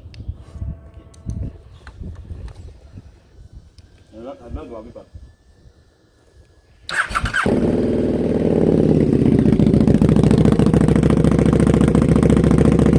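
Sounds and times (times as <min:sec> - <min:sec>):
starter motor cranking: 0:06.9 - 0:09.4
motorcycle engine idling: 0:06.9 - 0:12.9.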